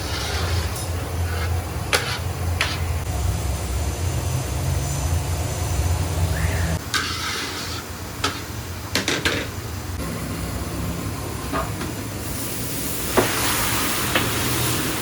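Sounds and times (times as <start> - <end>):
steam hissing or sizzling: 12.2 - 15.0.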